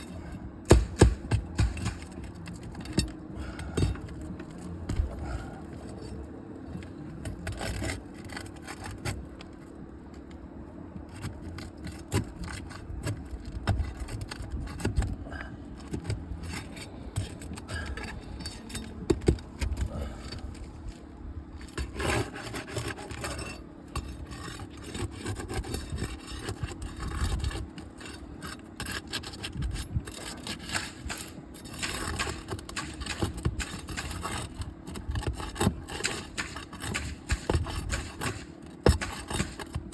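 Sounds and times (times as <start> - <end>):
shingles scraping and rubbing: 0.0 - 9.8, 11.1 - 39.9.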